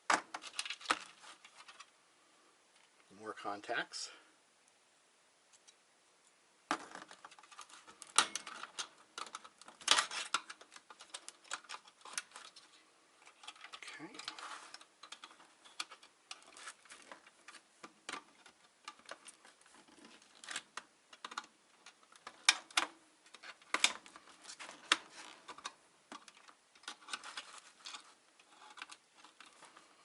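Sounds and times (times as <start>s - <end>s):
metal clicking against plastic: 7.3s - 29.7s.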